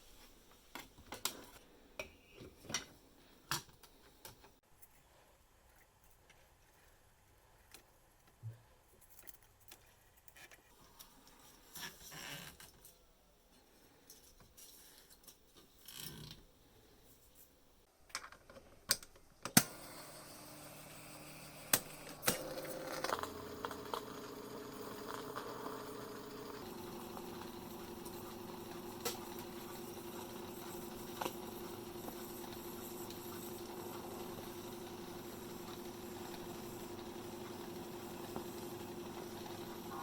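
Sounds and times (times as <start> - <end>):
tape recorder motor humming: 19.6 - 40.0.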